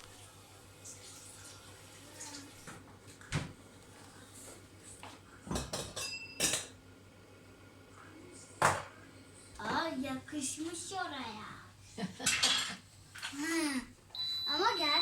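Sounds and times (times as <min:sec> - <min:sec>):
kitchenware clinking and knocking: 0:05.5 - 0:06.8, 0:12.2 - 0:12.8
high ringing tone: 0:14.2 - 0:15.0.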